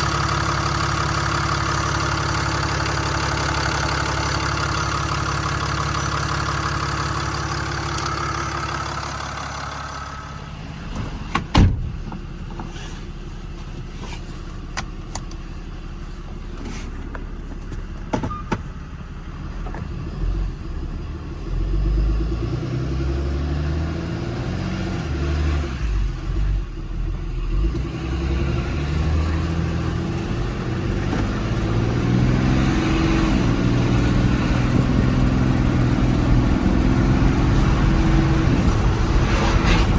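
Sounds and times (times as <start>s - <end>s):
diesel engine idling: 0.0s - 22.3s, 33.5s - 39.9s.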